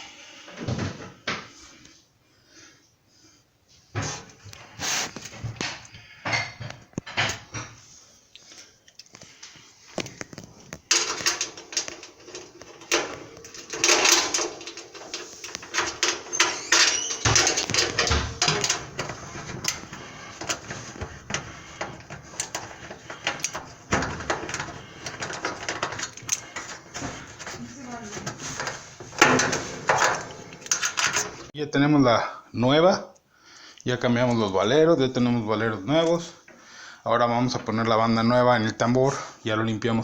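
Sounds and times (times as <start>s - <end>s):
dryer parts clicking and rattling: 4.3s - 7.8s, 8.5s - 31.5s.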